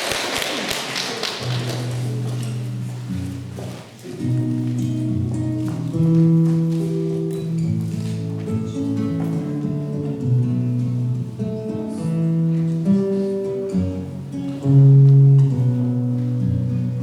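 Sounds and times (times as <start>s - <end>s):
acoustic guitar chords: 1.4s - 17.0s.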